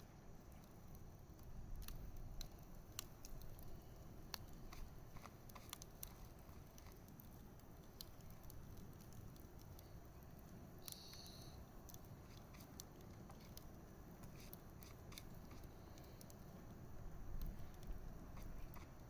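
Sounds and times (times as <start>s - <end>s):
low steady fire rumble: 0.0s - 19.0s
campfire crackling and popping: 0.1s - 19.0s.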